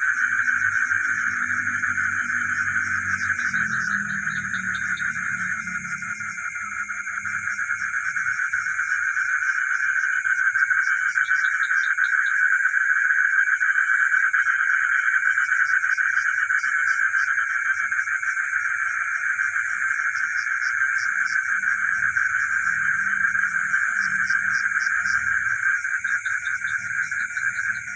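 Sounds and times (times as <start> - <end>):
high-pitched whine: 0.0 - 9.0, 20.9 - 27.9
frogs trilling: 0.0 - 27.9
low pulsing frog call: 0.0 - 27.9.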